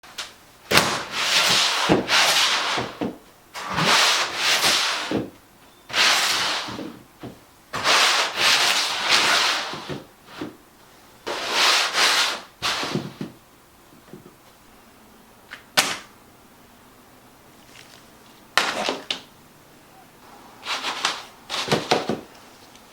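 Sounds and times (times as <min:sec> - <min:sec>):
harsh scraping noises: 0:05.9 - 0:07.0, 0:20.2 - 0:22.8.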